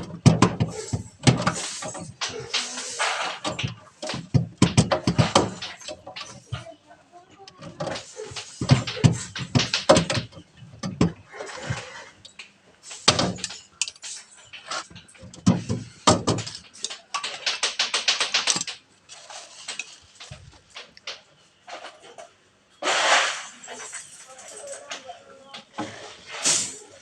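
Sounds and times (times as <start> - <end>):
metal brackets clinking and clattering: 0.0 - 6.7, 7.5 - 21.2.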